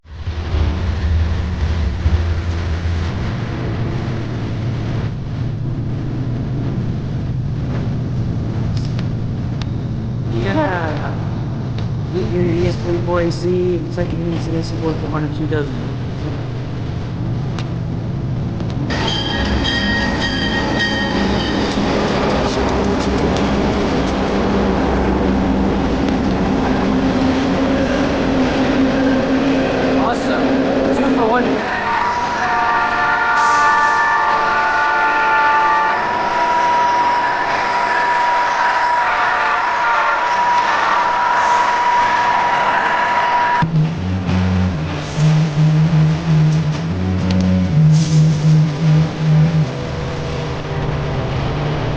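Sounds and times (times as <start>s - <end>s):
engine droning: 0.0s - 32.0s, 43.6s - 51.9s
train cars rumbling on rails: 0.0s - 51.9s.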